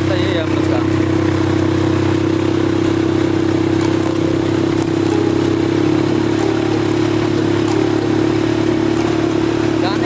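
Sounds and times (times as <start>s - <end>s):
atv engine running: 0.0s - 10.0s.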